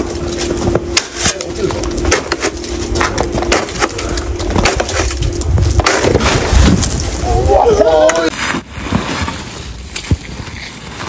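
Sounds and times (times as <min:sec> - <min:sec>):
low rumble: 0:00.0 - 0:08.3
snow crunching and cracking: 0:00.0 - 0:11.0
steady hum: 0:00.0 - 0:11.0.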